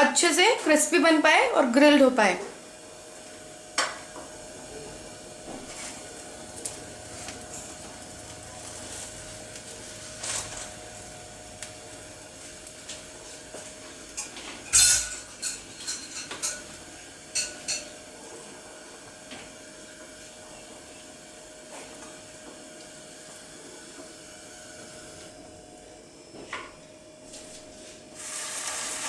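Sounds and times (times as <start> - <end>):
metal utensils clinking on dishes: 14.2 - 16.7, 17.3 - 17.9
steady hiss: 28.1 - 29.0.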